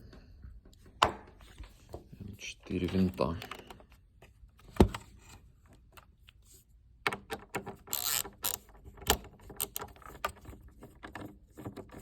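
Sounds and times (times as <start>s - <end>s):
screwdriver clicking on screws: 7.9s - 8.7s.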